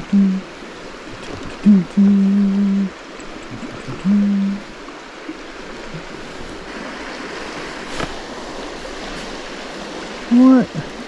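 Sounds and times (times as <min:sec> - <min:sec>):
man humming: 0:00.0 - 0:00.5, 0:01.2 - 0:04.7
creek water rushing: 0:00.0 - 0:11.0.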